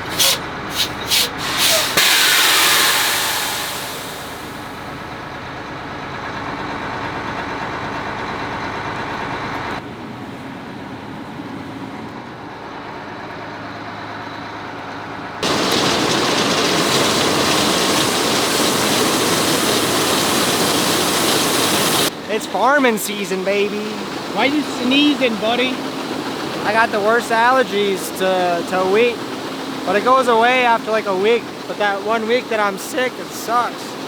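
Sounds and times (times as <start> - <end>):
diesel truck engine running: 0.0 - 34.0
loud rush of noise: 1.4 - 4.9.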